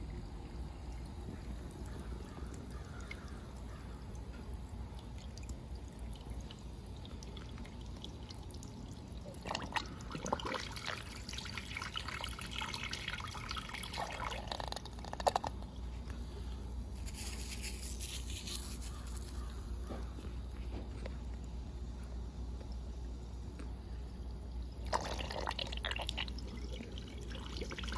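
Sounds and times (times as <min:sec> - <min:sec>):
water trickling and gurgling: 0:00.0 - 0:15.9, 0:23.8 - 0:27.9.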